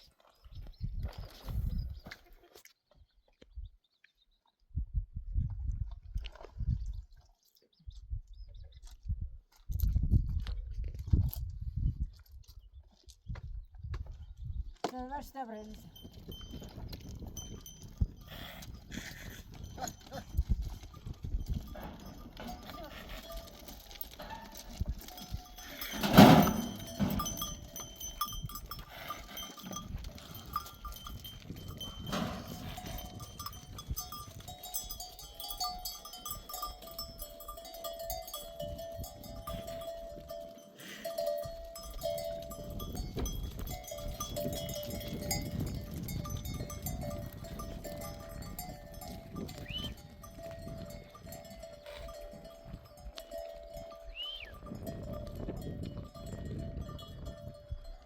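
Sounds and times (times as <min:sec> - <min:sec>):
sheep bells ringing: 0:15.6 - 0:58.0.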